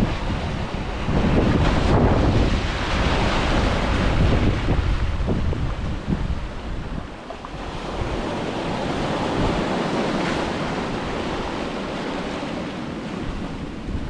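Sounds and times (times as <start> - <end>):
waves breaking on shore: 0.0 - 14.0
wind rumble on microphone: 0.0 - 14.0.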